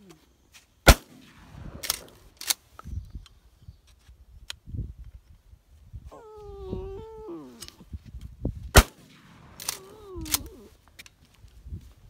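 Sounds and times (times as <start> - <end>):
shotgun shot with echo: 0.9 - 2.3, 8.8 - 9.9.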